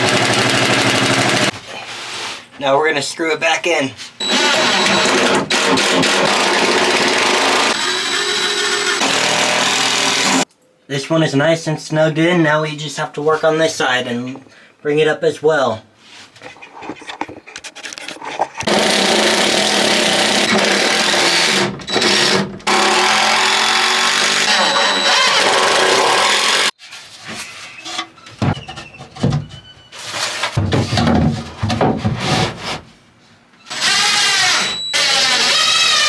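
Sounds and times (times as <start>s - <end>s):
power drill driving screws into wood: 4.2s - 10.4s, 18.7s - 26.7s, 33.7s - 36.0s.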